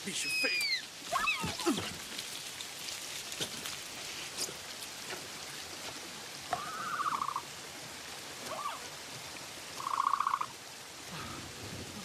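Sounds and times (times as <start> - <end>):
heavy rain pattering: 0.0 - 12.0.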